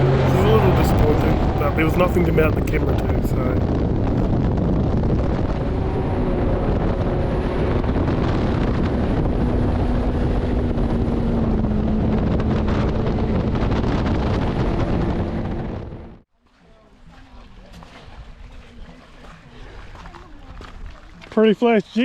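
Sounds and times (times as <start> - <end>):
wind buffeting microphone: 0.0 - 16.2
boat engine running: 0.0 - 21.2.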